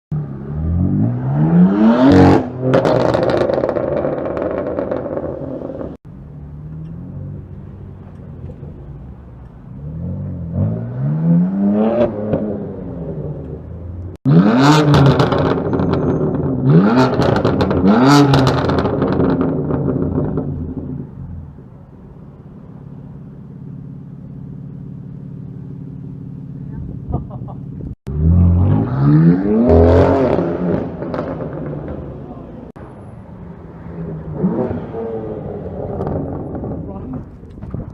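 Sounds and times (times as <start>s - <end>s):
car engine revving: 0.1s - 8.9s, 9.6s - 21.5s, 28.0s - 32.8s, 33.6s - 37.4s
exhaust crackles and pops: 35.7s - 37.9s.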